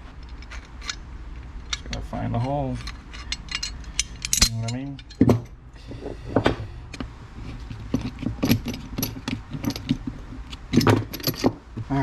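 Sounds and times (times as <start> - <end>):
small metal parts clicking: 0.2 - 5.4, 7.9 - 11.6.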